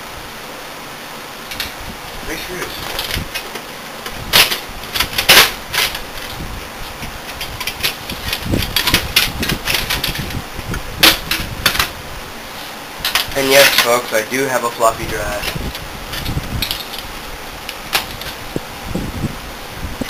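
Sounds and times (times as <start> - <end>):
metal parts clicking and knocking: 4.3 - 6.4, 7.3 - 10.4, 11.0 - 11.9, 13.0 - 14.2, 15.4 - 17.1.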